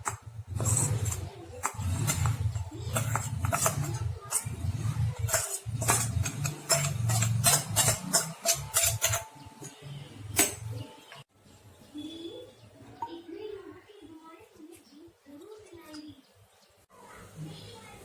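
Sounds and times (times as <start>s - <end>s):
mixer grinder grinding: 0.0s - 9.8s
contents clattering in jar: 5.2s - 9.8s.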